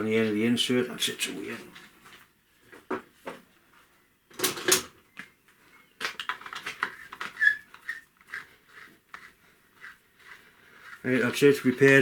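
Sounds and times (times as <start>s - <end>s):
metal clicks and scrapes: 6.0s - 12.0s
brief squeak: 7.3s - 8.0s.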